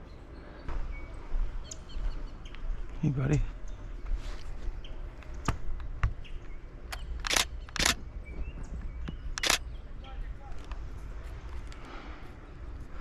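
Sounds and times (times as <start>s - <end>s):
camera shutter bursts: 6.9s - 8.0s, 9.4s - 9.6s
light camera clicks: 6.9s - 8.0s, 9.3s - 9.7s.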